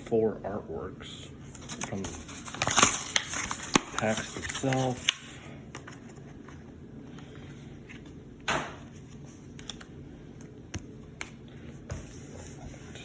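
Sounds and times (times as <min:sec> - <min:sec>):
low room hum: 0:00.0 - 0:13.0
card packaging rustle: 0:01.5 - 0:07.3.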